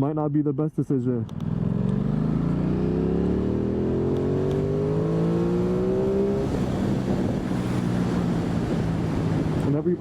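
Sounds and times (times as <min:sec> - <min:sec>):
motorcycle engine accelerating: 0:01.2 - 0:09.7
wind rush: 0:05.2 - 0:10.0.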